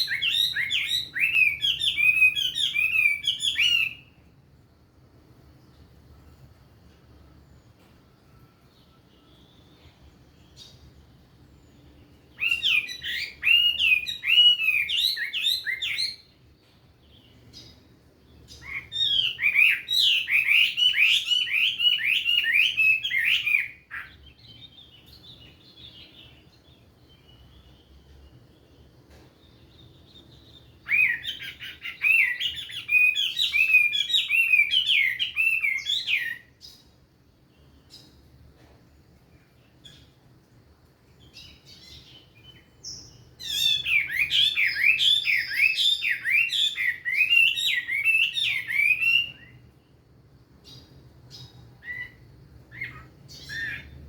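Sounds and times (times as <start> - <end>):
bird singing whistled phrases: 0.0 - 4.2, 12.3 - 16.4, 18.5 - 26.4, 29.8 - 36.8, 41.3 - 49.6, 50.7 - 54.0
faint bird chirps: 0.0 - 40.2, 41.1 - 54.0.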